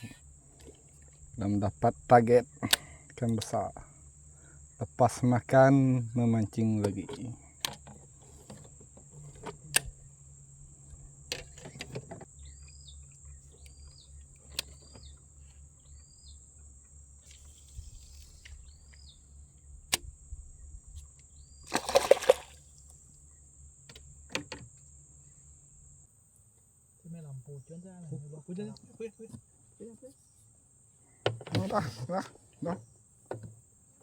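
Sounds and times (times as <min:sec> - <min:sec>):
insects chorus: 0:00.0 - 0:34.0
small clicks and knocks: 0:06.4 - 0:10.0, 0:10.9 - 0:16.1, 0:23.8 - 0:24.9, 0:31.2 - 0:31.8, 0:33.2 - 0:33.6.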